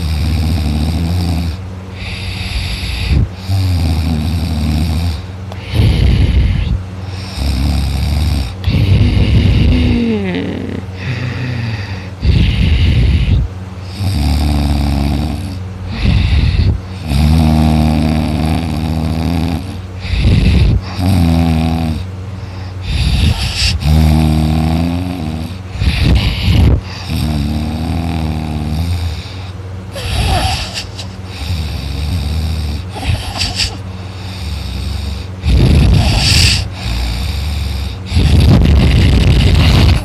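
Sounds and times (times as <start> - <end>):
man snoring loudly: 0.0 - 40.0
pitched moaning sound: 8.6 - 13.5.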